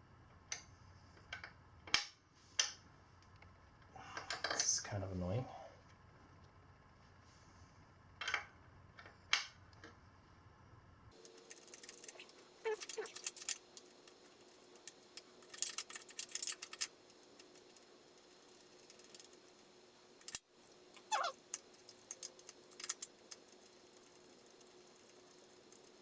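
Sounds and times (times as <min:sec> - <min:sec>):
metallic clicks and rattles of tools: 0:11.1 - 0:26.0
short falling squeaks: 0:21.0 - 0:21.4.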